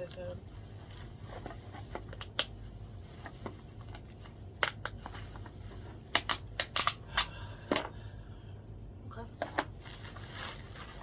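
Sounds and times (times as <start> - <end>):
crawfish shells cracking: 6.1 - 7.3.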